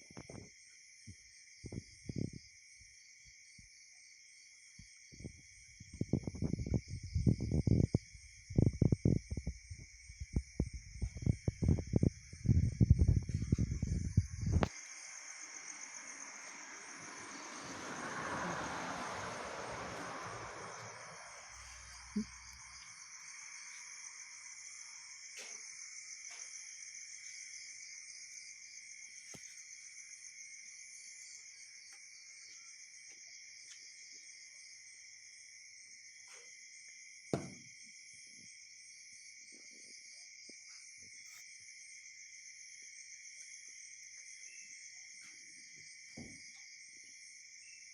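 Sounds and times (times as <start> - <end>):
insects chirring: 0.0 - 47.9
aeroplane passing overhead: 15.8 - 21.9
sharp thump: 37.3 - 37.6.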